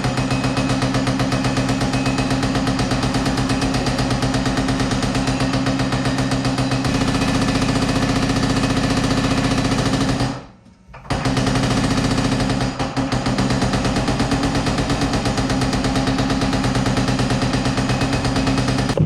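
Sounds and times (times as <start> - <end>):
machine ram hammering steel: 0.0 - 19.0
motor hum: 6.8 - 9.8.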